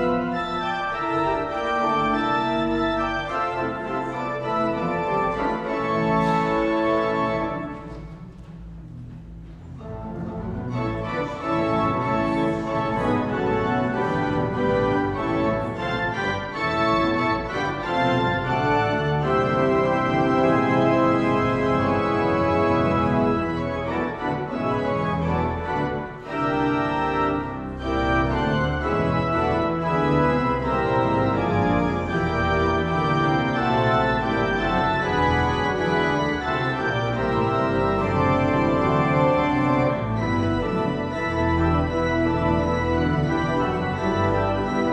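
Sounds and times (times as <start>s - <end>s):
church organ chords: 0.0s - 44.9s.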